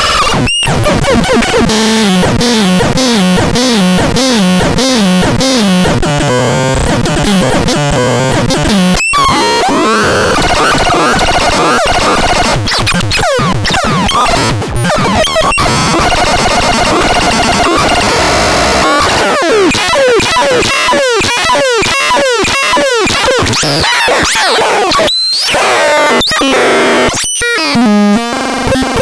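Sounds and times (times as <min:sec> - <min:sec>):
wobbling synthesizer tones: 0:01.1 - 0:21.6.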